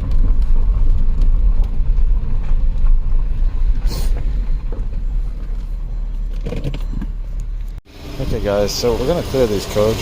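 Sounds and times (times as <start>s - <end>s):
car engine rumbling: 0.0s - 10.0s.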